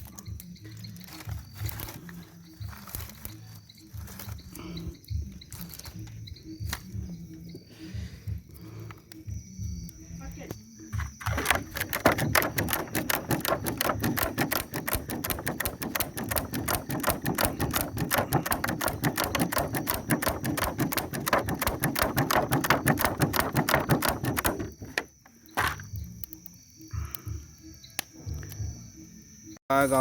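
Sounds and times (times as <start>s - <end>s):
bonfire crackling: 11.2s - 27.5s.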